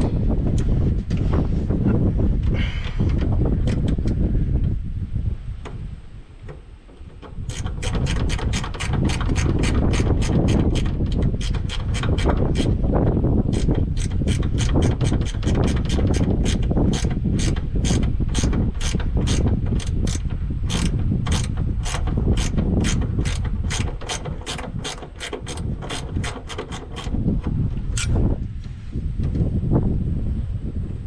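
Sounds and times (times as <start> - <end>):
ratchet wrench clicking: 7.5 - 12.8, 13.5 - 27.2, 27.9 - 28.2.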